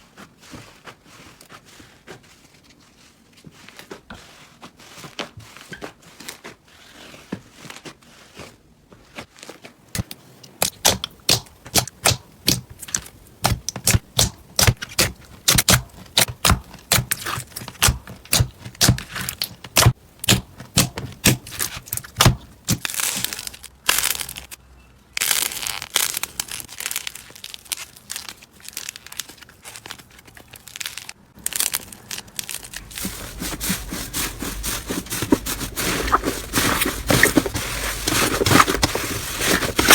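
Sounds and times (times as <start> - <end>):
slime crackling: 25.2 - 39.9.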